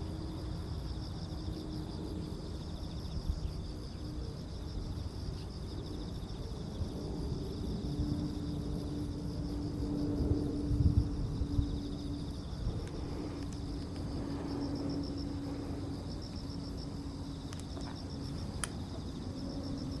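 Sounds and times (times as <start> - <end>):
crickets chirping: 0.0 - 20.0.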